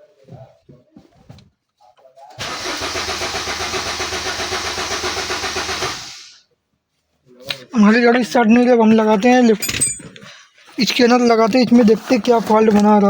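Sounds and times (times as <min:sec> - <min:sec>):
car engine cranking: 0:02.4 - 0:06.3.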